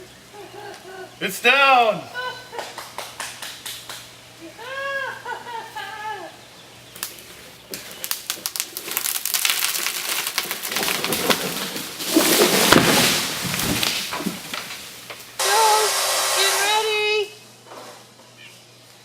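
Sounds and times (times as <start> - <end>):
dry twigs crackling and snapping: 6.9 - 15.4.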